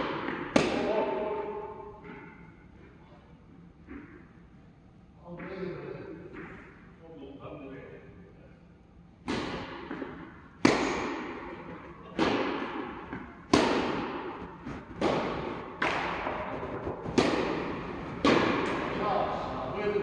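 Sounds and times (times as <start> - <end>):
tennis ball hit by rackets: 0.0 - 1.4, 9.2 - 19.7.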